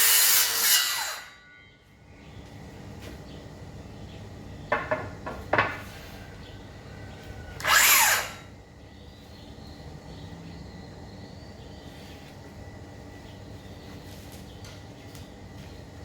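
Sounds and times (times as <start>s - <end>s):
circular saw motor whirring: 7.6s - 8.5s.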